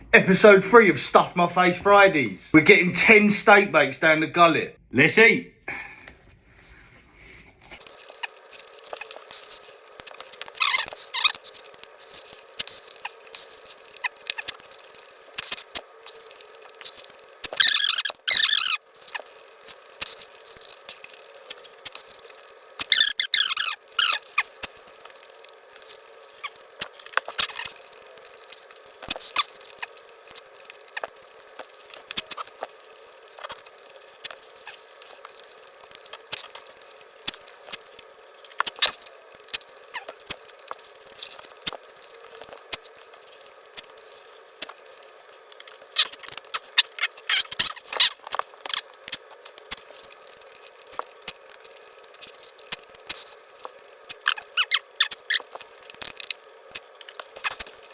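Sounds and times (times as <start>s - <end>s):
pastry crackling: 6.7s - 57.9s.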